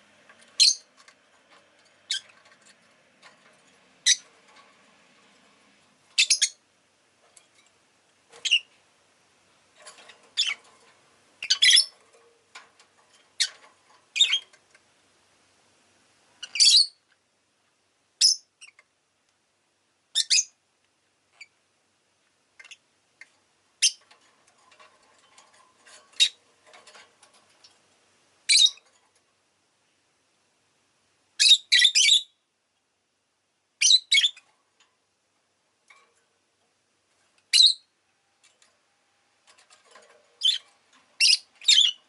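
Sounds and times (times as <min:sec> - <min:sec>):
lovebird shrill chirps: 0:00.6 - 0:00.9, 0:06.2 - 0:06.6, 0:08.4 - 0:08.7, 0:11.4 - 0:11.9, 0:16.4 - 0:17.0, 0:20.2 - 0:20.5, 0:28.5 - 0:28.8, 0:31.4 - 0:32.4, 0:33.8 - 0:34.4, 0:37.5 - 0:37.9, 0:41.2 - 0:42.0.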